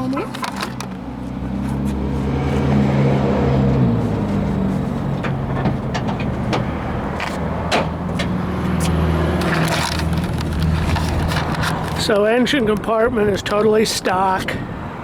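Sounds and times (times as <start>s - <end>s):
sharp clicks and knocks: 5.0s - 12.2s.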